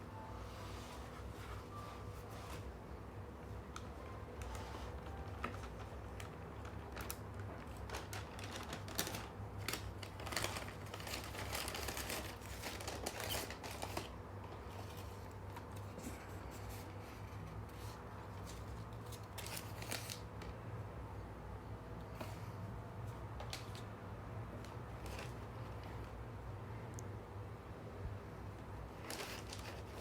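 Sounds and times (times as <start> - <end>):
packaging clicks and rustles: 3.7 - 17.0, 17.6 - 20.6, 23.3 - 24.0, 24.6 - 26.1, 28.9 - 30.0.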